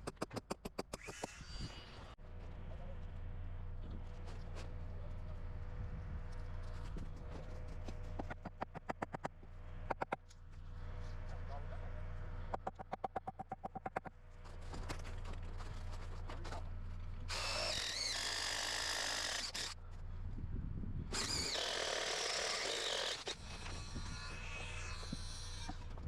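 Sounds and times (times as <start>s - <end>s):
power drill boring into wood: 17.3s - 19.8s, 21.1s - 25.8s.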